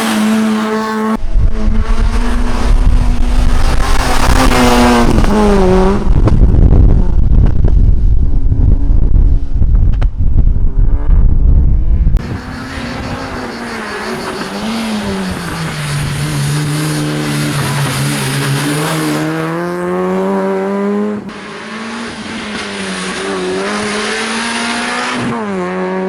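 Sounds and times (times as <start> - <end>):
racing car engine accelerating: 0.0 - 6.4, 12.2 - 26.0.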